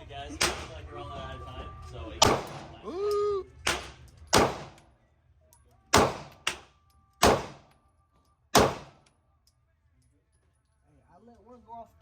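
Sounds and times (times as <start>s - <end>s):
gunshots with echo: 2.2s - 2.8s, 3.7s - 4.8s, 5.9s - 6.6s, 7.2s - 7.7s, 8.6s - 9.0s.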